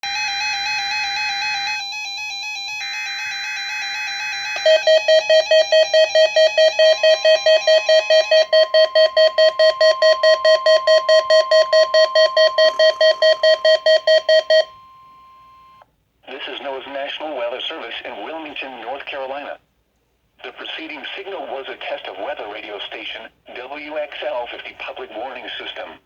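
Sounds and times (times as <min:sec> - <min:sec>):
steady high warning tone: 0:04.2 - 0:15.8
electronic alarm beeping: 0:04.5 - 0:15.8.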